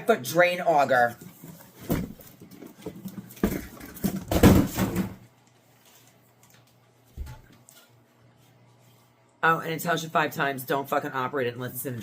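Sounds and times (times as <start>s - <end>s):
cardboard box rustling and knocking: 1.8s - 5.2s.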